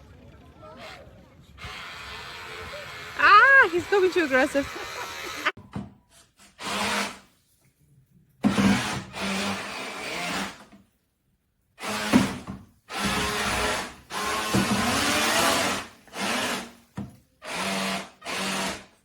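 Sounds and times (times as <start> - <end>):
buzzing electric toy motor: 1.6 - 5.6, 12.9 - 16.8, 17.4 - 19.0.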